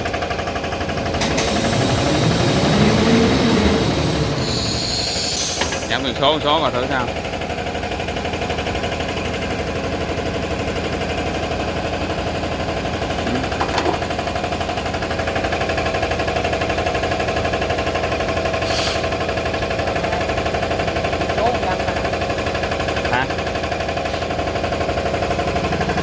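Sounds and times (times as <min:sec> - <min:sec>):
steady machine hum: 0:00.6 - 0:26.0
short hiss: 0:04.6 - 0:06.0, 0:18.6 - 0:19.1.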